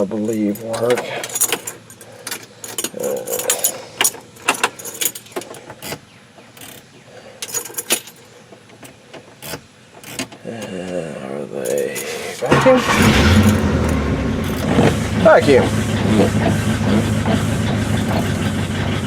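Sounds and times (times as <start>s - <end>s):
keys jingling: 0.2s - 6.0s, 7.4s - 8.3s, 11.6s - 12.4s.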